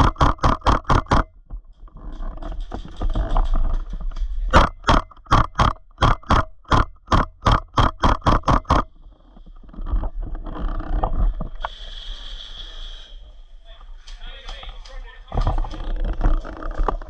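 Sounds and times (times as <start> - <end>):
sharp knocks: 0.0 - 1.4, 4.5 - 8.9.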